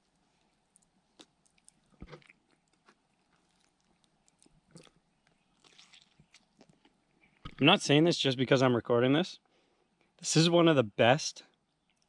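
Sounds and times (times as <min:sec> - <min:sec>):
chewing soft bread: 0:00.0 - 0:07.6, 0:11.5 - 0:12.0.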